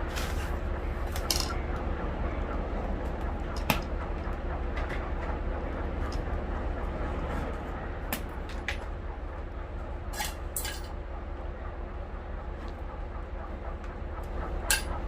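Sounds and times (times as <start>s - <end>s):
steady low hum: 0.0s - 15.0s
hand tools clicking and clinking: 10.1s - 10.9s.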